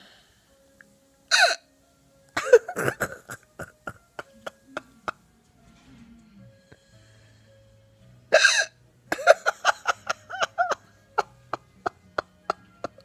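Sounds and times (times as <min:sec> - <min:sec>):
child giggling: 0:02.4 - 0:05.2, 0:09.1 - 0:12.0.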